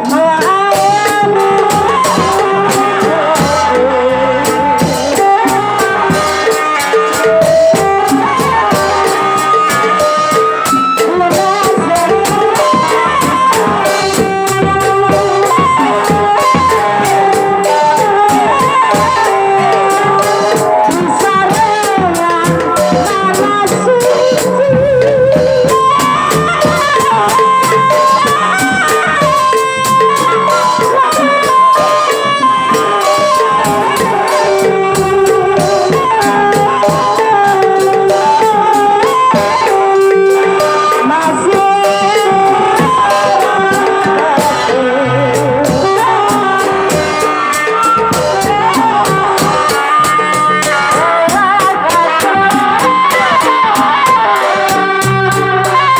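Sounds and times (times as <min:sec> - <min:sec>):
fast steady percussion: 0:00.0 - 0:55.9
ornamented melody: 0:00.0 - 0:55.9.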